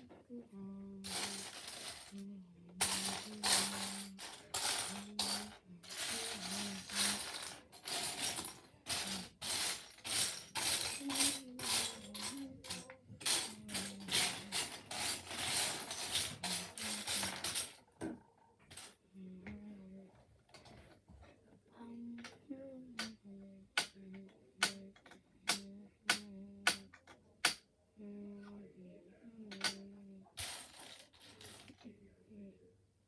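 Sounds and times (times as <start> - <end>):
plastic bricks clicking and rattling: 2.8 - 17.8.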